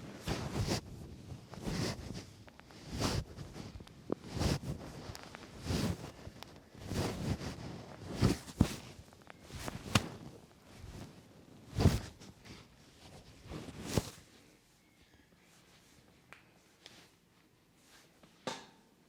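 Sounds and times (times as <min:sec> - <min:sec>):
hands rubbing and striking head: 0:00.2 - 0:14.2.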